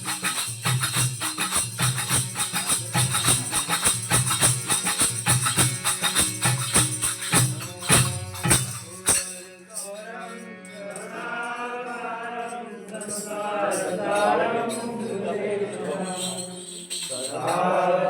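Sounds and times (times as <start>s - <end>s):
drum and jingling tambourine: 0.0s - 10.1s, 15.8s - 17.9s.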